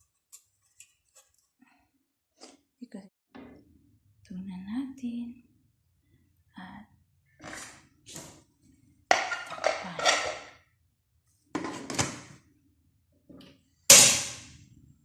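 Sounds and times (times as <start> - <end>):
metal pot and lid clattering: 9.1 - 10.5, 13.9 - 14.5
loud metal clang: 13.9 - 14.6.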